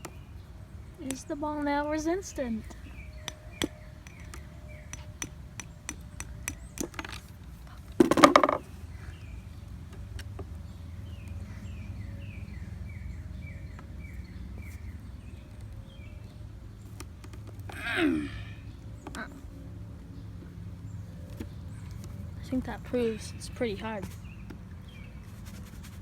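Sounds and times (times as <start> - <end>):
bird chirping: 0.0 - 25.8
low outdoor hum: 0.0 - 26.0
nail tapping on plastic ball: 2.7 - 7.2.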